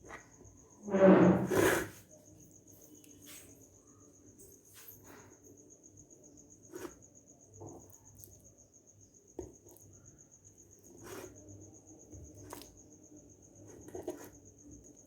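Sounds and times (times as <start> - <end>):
cricket chirping: 0.0 - 15.0.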